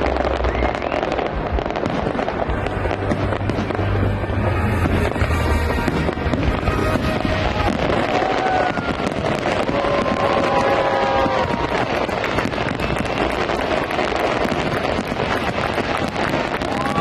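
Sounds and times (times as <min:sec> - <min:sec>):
fireworks crackling and popping: 0:00.0 - 0:17.0
held whistling tones: 0:00.3 - 0:01.4.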